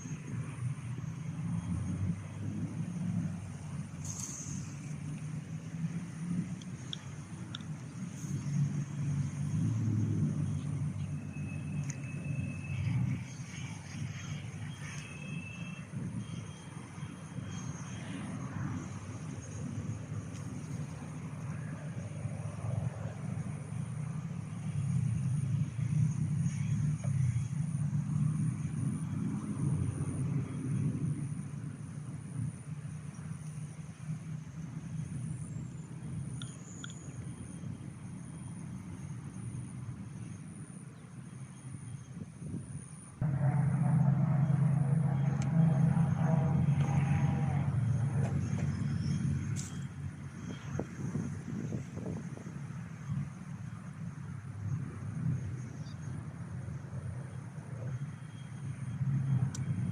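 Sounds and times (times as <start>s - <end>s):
engine humming: 43.0s - 54.1s.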